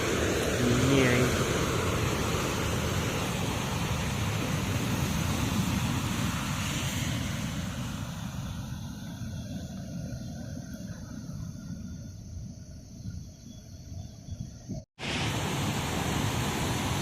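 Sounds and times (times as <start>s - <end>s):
waves breaking: 0.0s - 11.2s, 15.0s - 17.0s
wind buffeting microphone: 0.0s - 17.0s.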